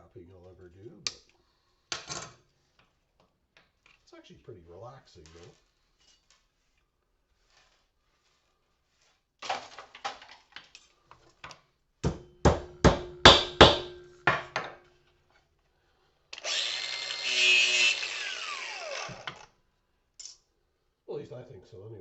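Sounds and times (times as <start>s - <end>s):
hammer smashing porcelain: 9.4s - 10.6s, 12.0s - 14.9s
power grinder running: 16.4s - 19.5s.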